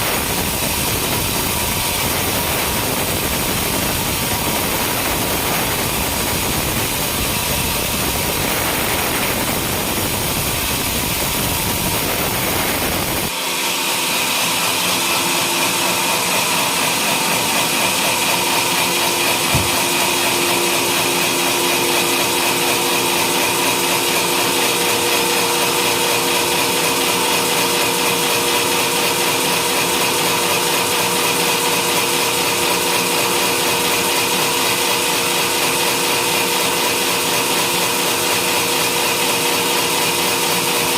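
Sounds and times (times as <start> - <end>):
saw whining through wood: 0.0 - 40.9
sawmill engine running: 0.0 - 40.9
sharp knock: 19.4 - 20.0.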